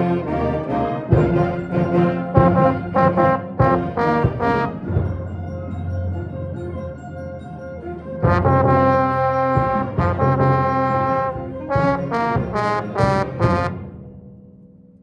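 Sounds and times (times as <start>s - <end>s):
band with trombones playing: 0.0s - 5.4s, 8.2s - 14.2s.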